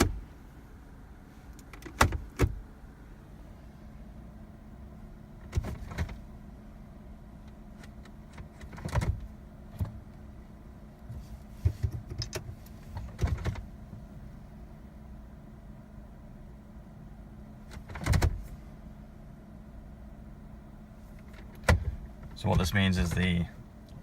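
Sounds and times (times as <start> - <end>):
knocks and rattles in car cabin: 0.0 - 0.4, 1.6 - 2.7, 5.3 - 6.3, 7.7 - 10.2, 11.1 - 14.1, 17.6 - 18.6, 21.0 - 24.0
steady low hum: 0.0 - 24.0.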